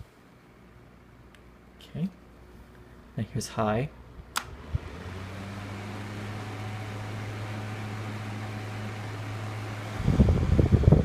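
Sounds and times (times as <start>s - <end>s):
fan rushing air: 0.0s - 11.0s
low motor hum: 3.9s - 11.0s
wind buffeting microphone: 9.9s - 11.0s.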